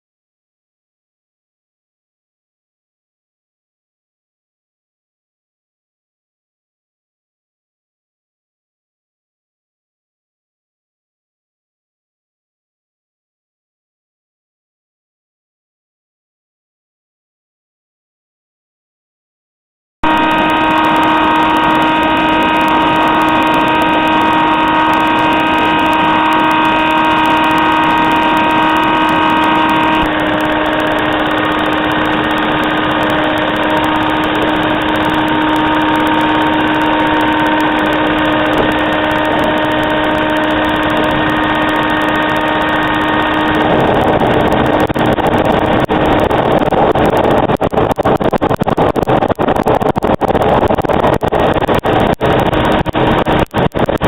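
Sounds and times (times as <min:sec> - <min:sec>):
furnace droning: 0:20.0 - 0:47.2.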